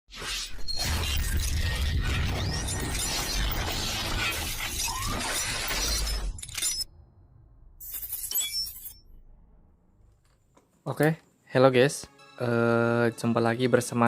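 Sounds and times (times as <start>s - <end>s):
glass shattering: 7.8s - 9.1s.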